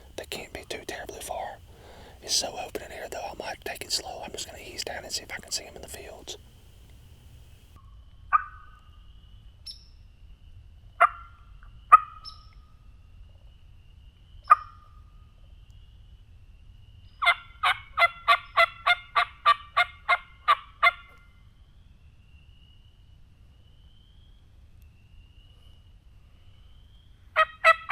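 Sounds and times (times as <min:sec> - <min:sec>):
turkey yelps: 0:27.4 - 0:27.9.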